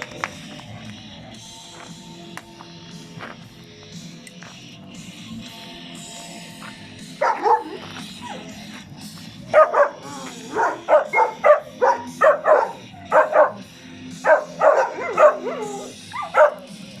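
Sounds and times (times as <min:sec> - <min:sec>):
background music: 0:00.0 - 0:17.0
dogs barking: 0:07.0 - 0:17.0.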